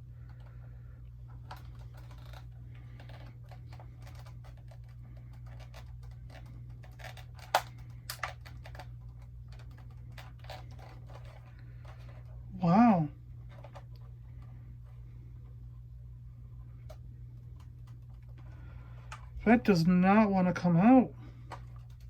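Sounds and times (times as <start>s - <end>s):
steady low hum: 0.0s - 22.0s
plastic toy clicks and scrapes: 1.4s - 12.3s.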